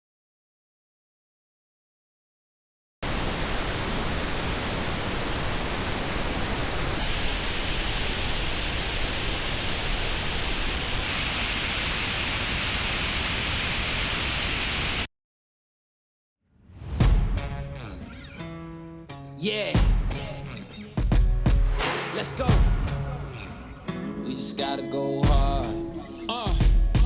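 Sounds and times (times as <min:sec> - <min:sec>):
pink noise hiss: 0:03.0 - 0:15.1.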